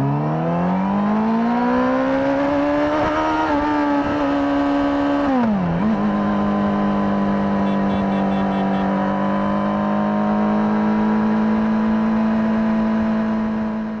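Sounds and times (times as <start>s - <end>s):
motorcycle engine running: 6.0s - 9.0s.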